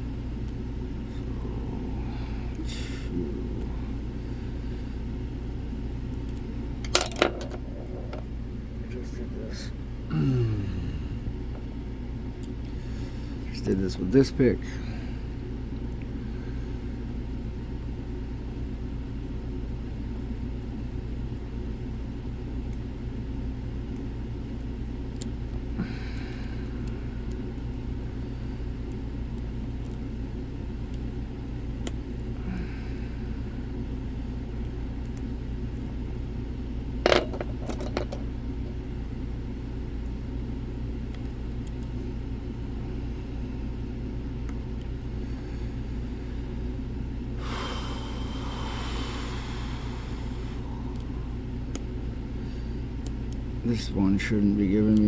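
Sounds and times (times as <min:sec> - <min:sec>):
steady low hum: 0:00.0 - 0:55.0
lock picks clicking and scraping: 0:37.1 - 0:38.3.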